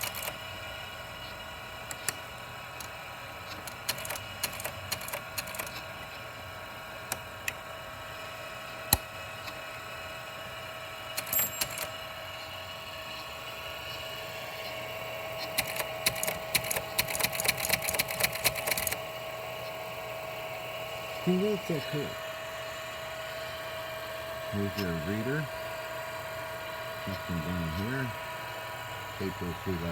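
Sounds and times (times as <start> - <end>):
teletype mechanical clicking: 0.0 - 0.6, 1.8 - 6.2, 7.0 - 7.6, 11.1 - 12.0, 15.4 - 19.1
teletype motor running: 0.0 - 29.9.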